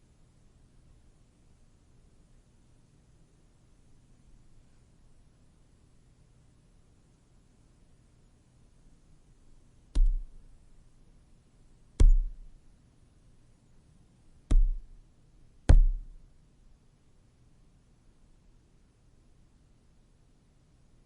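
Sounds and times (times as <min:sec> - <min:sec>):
fist punching phone book: 0:10.0 - 0:10.4, 0:12.0 - 0:12.4, 0:14.5 - 0:15.0, 0:15.7 - 0:16.2.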